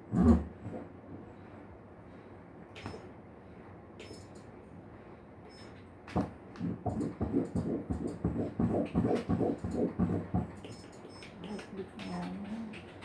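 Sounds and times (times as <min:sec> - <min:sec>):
fetal heartbeat whooshing pulses: 0:06.2 - 0:13.0.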